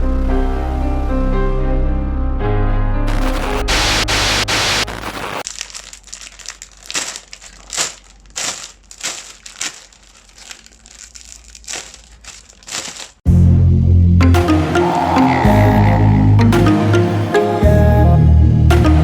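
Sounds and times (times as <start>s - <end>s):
plastic wrapping crinkling: 5.4s - 13.2s.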